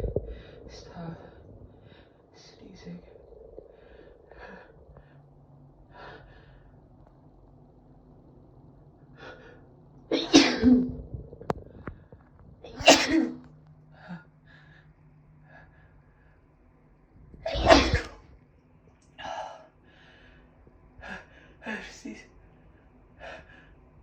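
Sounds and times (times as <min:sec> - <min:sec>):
woman sneezing: 0:17.5 - 0:18.1.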